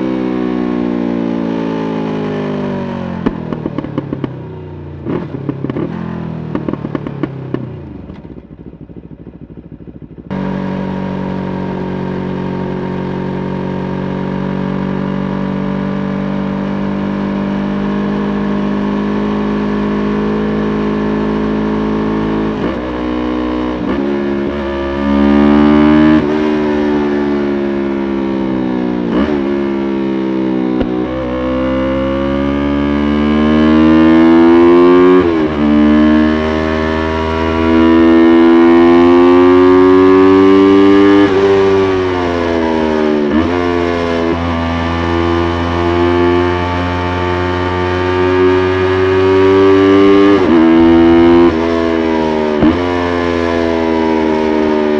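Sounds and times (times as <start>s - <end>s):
motorcycle engine shifting gears: 0.0s - 54.9s.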